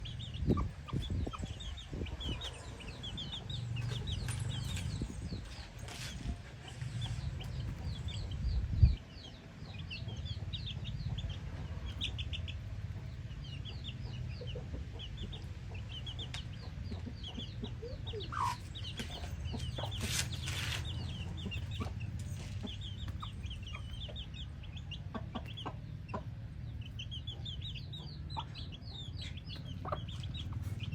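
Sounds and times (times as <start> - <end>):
hen clucking: 0.0 - 8.6, 13.7 - 30.9
steady low rumble: 0.0 - 14.5
chicks peeping: 0.0 - 30.9.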